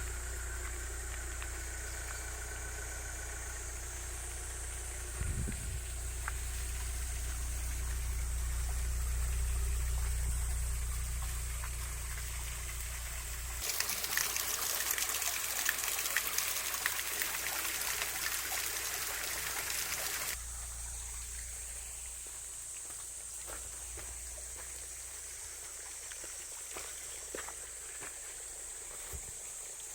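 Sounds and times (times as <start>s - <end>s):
steady low hum: 0.0s - 13.7s
water trickling and splashing: 0.1s - 29.9s.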